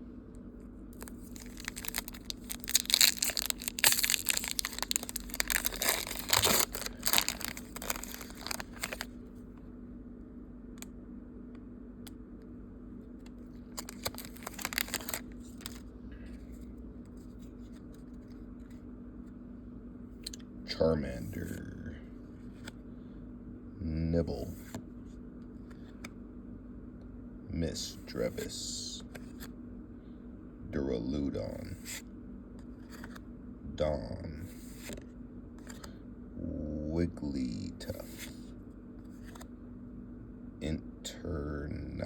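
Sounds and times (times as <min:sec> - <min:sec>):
faint low hum: 0:00.0 - 0:42.0
foil wrapper tearing and crinkling: 0:01.0 - 0:09.1, 0:13.7 - 0:15.8.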